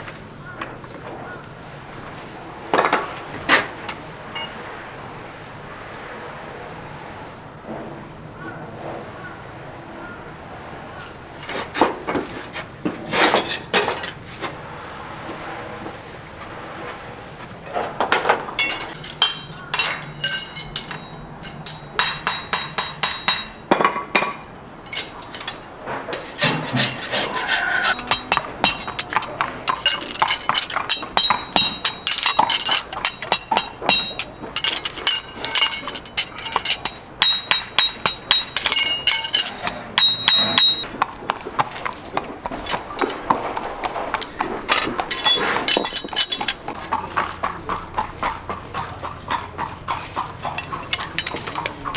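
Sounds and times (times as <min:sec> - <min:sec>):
hammer tapping on steel horseshoe: 0:18.6 - 0:25.6, 0:26.2 - 0:48.1, 0:48.7 - 0:51.9.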